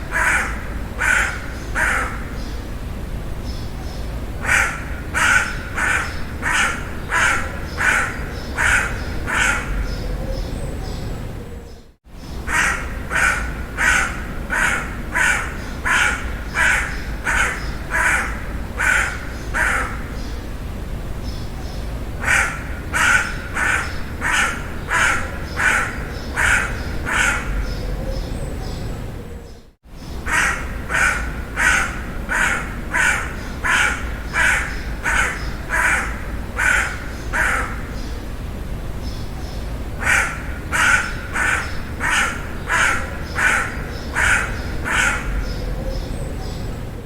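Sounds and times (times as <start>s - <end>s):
crow cawing: 0.0s - 2.5s, 4.4s - 9.9s, 12.4s - 20.2s, 22.2s - 27.8s, 30.2s - 38.0s, 40.0s - 45.6s
low background noise: 0.0s - 47.0s.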